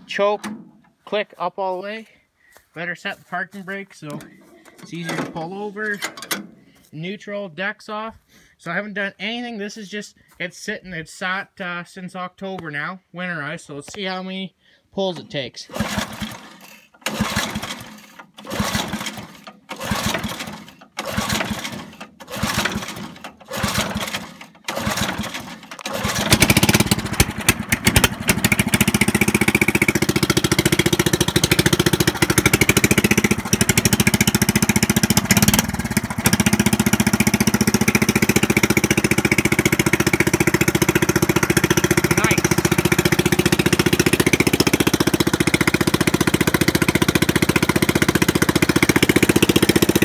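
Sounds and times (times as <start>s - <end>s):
recoil starter pulls: 0.1s - 1.0s, 4.0s - 6.8s, 15.7s - 50.0s
loud mower engine running: 4.0s - 6.6s, 15.7s - 50.0s.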